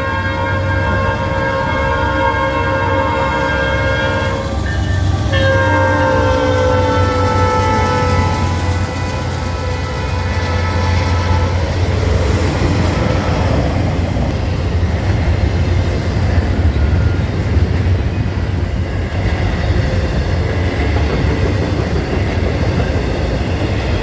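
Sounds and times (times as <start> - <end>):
freight train rumbling past: 0.0 - 24.0.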